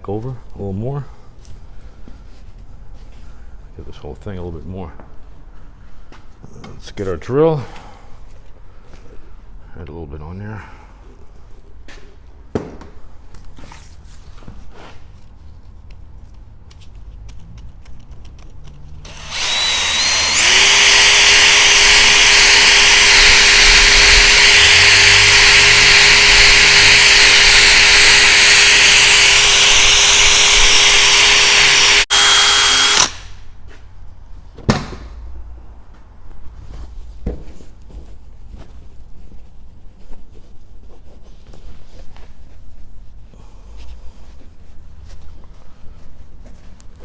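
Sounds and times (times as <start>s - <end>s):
cordless drill polishing whine: 19.0s - 33.2s.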